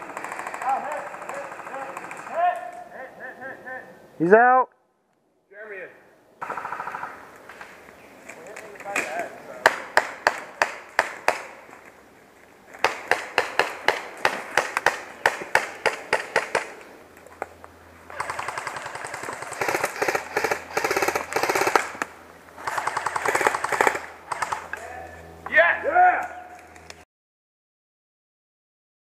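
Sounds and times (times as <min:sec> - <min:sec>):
airsoft rifle firing: 0:00.0 - 0:02.5, 0:06.4 - 0:07.2, 0:12.8 - 0:16.8, 0:18.1 - 0:24.8.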